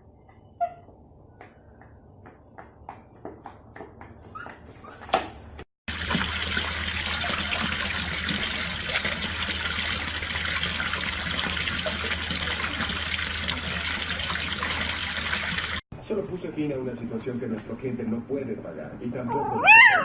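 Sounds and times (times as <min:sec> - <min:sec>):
running water rushing: 0:05.9 - 0:15.8.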